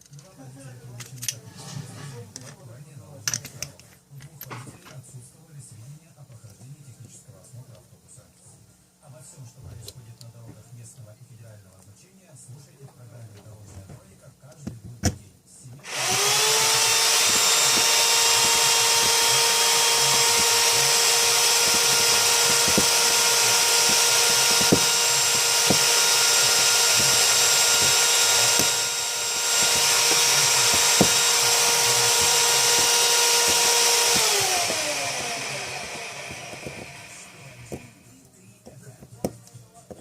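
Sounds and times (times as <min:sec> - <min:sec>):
cordless drill whining: 0:15.8 - 0:38.0.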